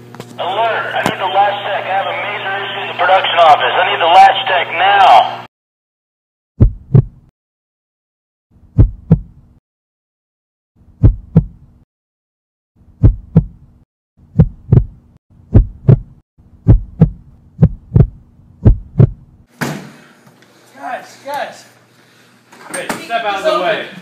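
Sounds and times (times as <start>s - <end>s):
heartbeat thumps: 6.6s - 7.3s, 8.6s - 9.6s, 10.9s - 11.7s, 12.9s - 19.4s.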